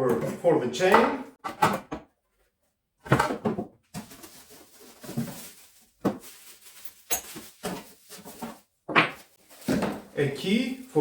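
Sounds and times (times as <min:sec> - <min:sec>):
packaging rustling: 0:03.9 - 0:11.0.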